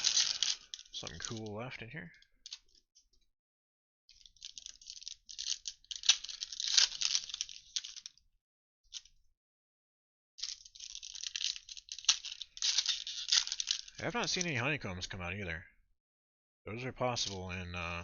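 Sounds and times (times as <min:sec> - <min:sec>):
wrapper crinkling and tearing: 0:00.0 - 0:01.5, 0:04.1 - 0:08.2, 0:10.4 - 0:14.5.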